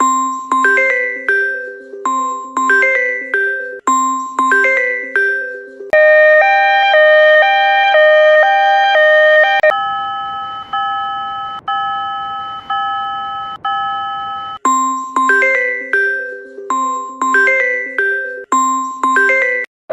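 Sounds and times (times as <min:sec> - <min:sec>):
ringing bell tone: 0:00.0 - 0:05.9, 0:09.7 - 0:19.7
two-tone crossing alarm: 0:00.0 - 0:19.7.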